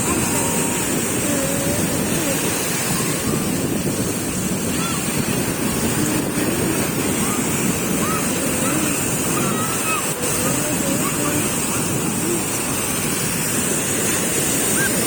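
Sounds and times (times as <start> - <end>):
faint distant voices: 0.0 - 15.0
waves washing in: 0.0 - 15.0
wind buffeting microphone: 0.0 - 15.0.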